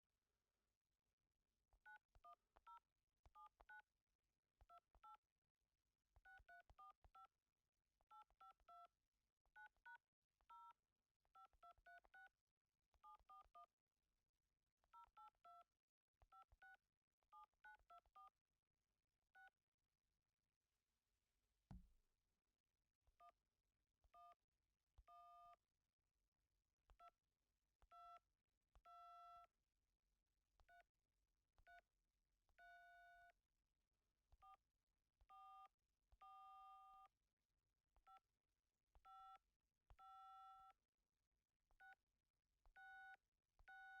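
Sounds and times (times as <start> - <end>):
telephone keypad dialing tones: 35.3 - 37.1, 39.1 - 39.4, 40.0 - 40.8.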